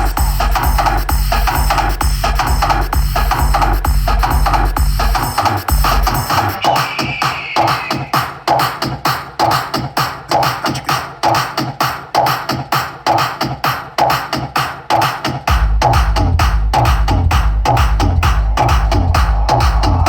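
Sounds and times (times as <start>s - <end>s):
deep bass: 0.0s - 6.6s, 15.5s - 20.0s
electronic dance music: 0.0s - 20.0s.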